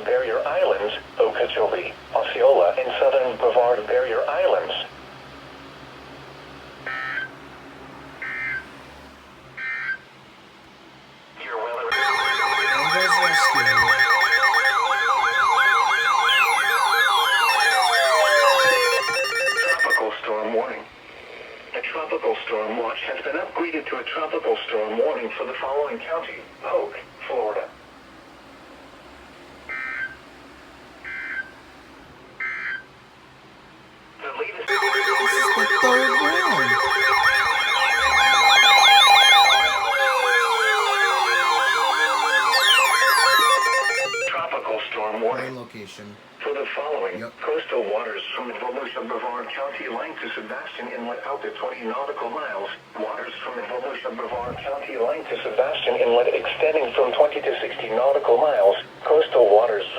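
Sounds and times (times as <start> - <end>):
electronic yelp siren: 11.9 - 20.0, 34.7 - 44.4
falling siren wail: 11.9 - 20.0, 34.7 - 44.3
low tone gliding downward: 11.9 - 20.0, 34.7 - 44.3
steady alarm tones: 11.9 - 20.0, 34.7 - 44.4.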